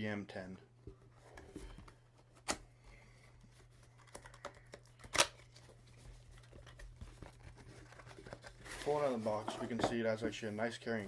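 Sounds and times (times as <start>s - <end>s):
packaging clicks and rustles: 3.6s - 9.4s.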